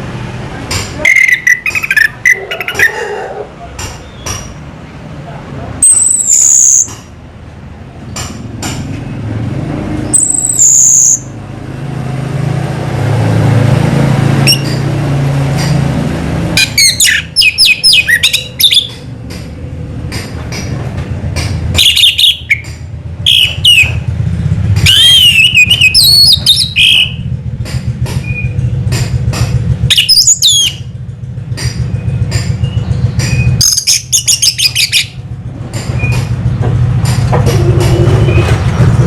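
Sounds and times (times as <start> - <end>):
bird singing: 1.0 - 3.1, 5.8 - 6.9, 10.1 - 11.3, 16.6 - 19.0, 21.8 - 24.1, 24.8 - 27.3, 29.9 - 31.0, 31.9 - 35.2.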